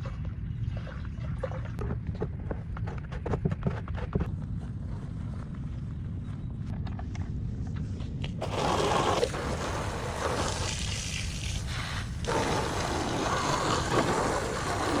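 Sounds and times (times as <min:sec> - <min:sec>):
water jet hissing: 0:08.4 - 0:15.0.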